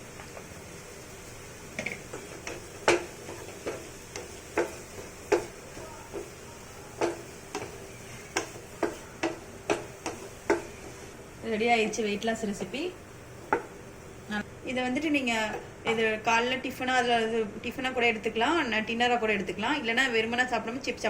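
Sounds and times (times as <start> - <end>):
utensil knocking against pan: 1.8 - 6.3, 7.0 - 10.7.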